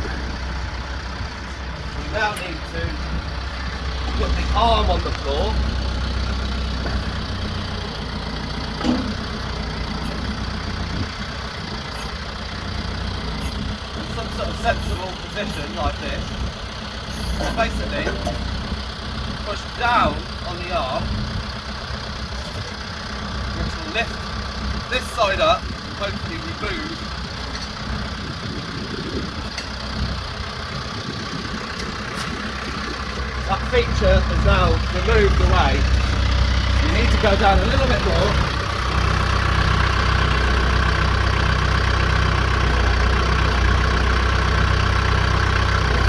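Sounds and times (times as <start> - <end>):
tractor diesel engine idling: 0.0 - 46.0
backhoe arm clunk: 2.3 - 14.0, 17.0 - 19.4.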